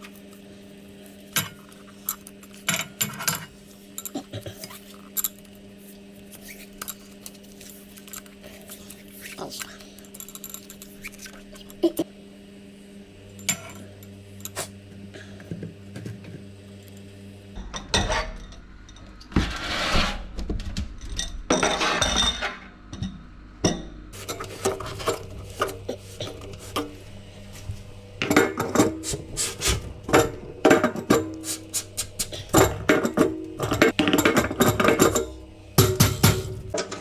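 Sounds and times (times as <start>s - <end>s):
steady low hum: 0.0s - 37.0s
metal tools clinking and scraping: 1.3s - 5.5s, 6.3s - 9.0s, 9.6s - 11.7s, 13.3s - 14.7s, 24.2s - 37.0s.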